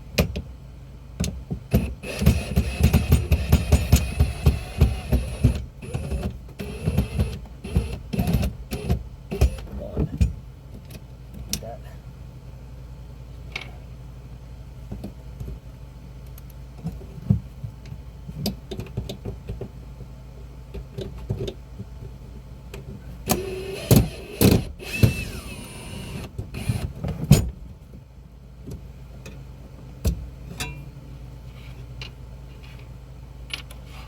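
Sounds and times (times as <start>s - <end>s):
low steady hum: 0.0s - 34.0s
cordless drill whirring: 2.0s - 9.6s, 23.3s - 26.8s.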